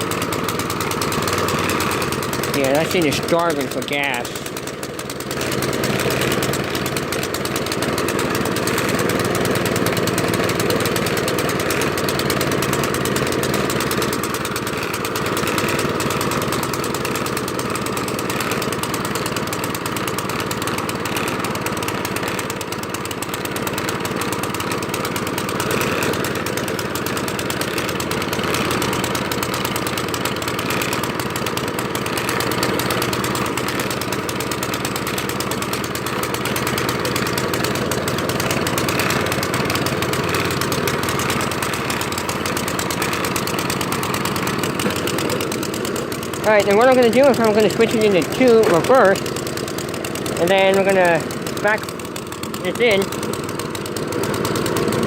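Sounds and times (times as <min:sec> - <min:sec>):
snowblower engine running: 0:00.0 - 0:55.0.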